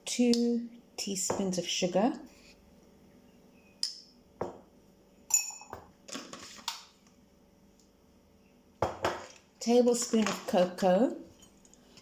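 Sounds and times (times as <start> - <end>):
teaspoon clinking against a mug: 5.3 - 5.8.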